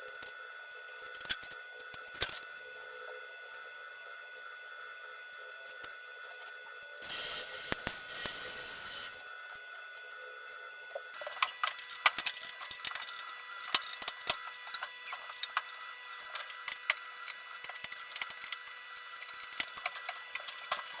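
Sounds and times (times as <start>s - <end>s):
clicks and knocks of hard objects: 11.2s - 21.0s.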